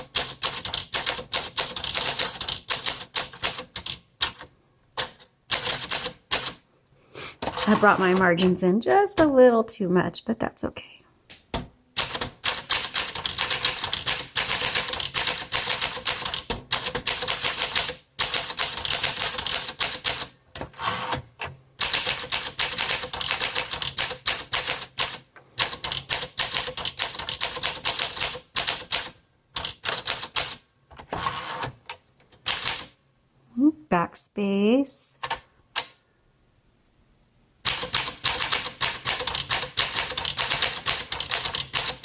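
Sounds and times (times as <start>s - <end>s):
manual typewriter typing: 0.0s - 6.6s, 7.4s - 8.6s, 12.0s - 33.0s, 37.6s - 42.0s.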